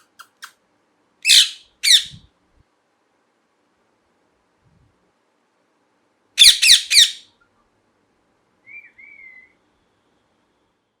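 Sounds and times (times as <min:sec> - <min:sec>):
parakeet harsh screeches: 0:01.3 - 0:02.1.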